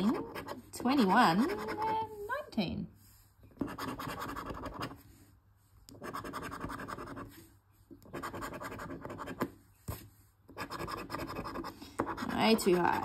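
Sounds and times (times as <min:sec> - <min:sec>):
scratching lottery ticket: 0:00.0 - 0:02.1, 0:03.6 - 0:05.0, 0:06.0 - 0:07.3, 0:08.1 - 0:09.5, 0:10.6 - 0:13.0.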